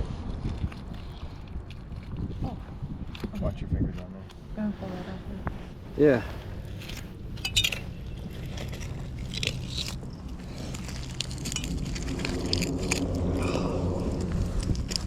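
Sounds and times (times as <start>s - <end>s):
steady low rumble: 0.0s - 15.0s
metal clicks and scrapes: 6.8s - 13.2s.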